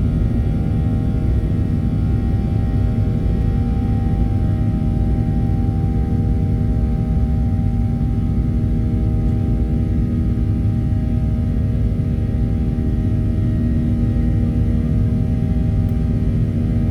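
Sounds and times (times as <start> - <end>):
airplane cabin rumble: 0.0 - 16.9.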